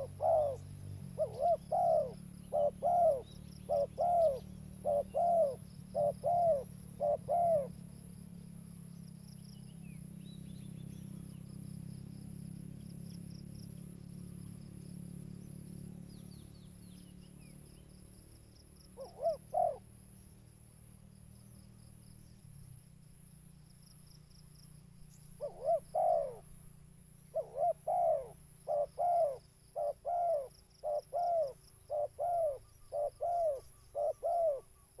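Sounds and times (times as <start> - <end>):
dove cooing: 0.0 - 7.8, 18.9 - 19.9, 25.4 - 26.6, 27.3 - 35.0.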